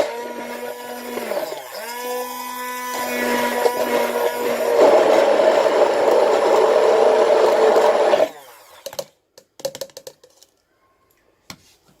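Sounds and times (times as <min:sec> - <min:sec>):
electric hand blender motor running: 0:00.0 - 0:09.0.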